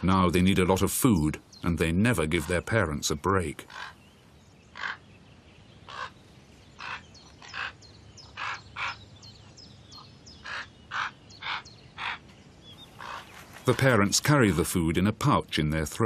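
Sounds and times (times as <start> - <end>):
nestlings harsh begging calls: 3.6 - 5.1, 5.8 - 14.8.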